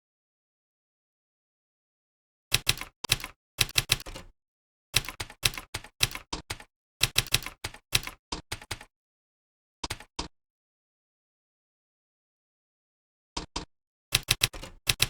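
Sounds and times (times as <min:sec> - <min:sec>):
typing on keyboard: 0:02.5 - 0:04.3, 0:05.0 - 0:08.9, 0:09.8 - 0:10.1, 0:14.1 - 0:15.0.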